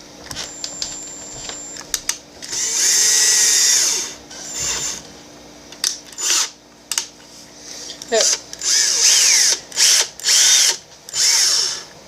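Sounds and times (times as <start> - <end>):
electric screwdriver whirring: 2.4 - 5.0, 6.1 - 6.6, 8.1 - 11.9.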